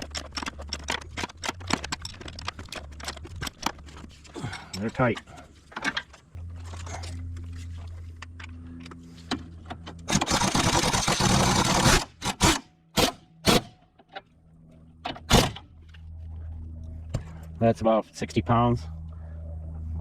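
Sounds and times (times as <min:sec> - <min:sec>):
dense rapid rattling of tools: 0:00.0 - 0:06.2, 0:10.0 - 0:12.6.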